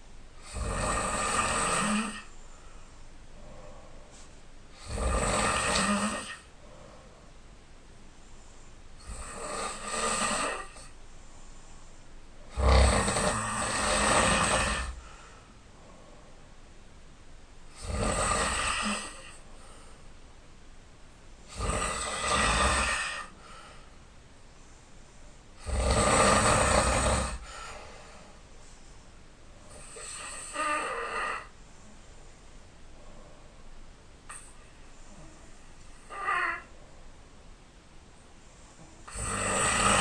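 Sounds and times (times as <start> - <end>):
man snoring loudly: 0.4 - 2.3, 4.8 - 6.5, 9.0 - 10.9, 12.5 - 15.0, 17.8 - 19.4, 21.5 - 23.3, 25.6 - 27.5, 29.7 - 31.5, 39.1 - 40.0.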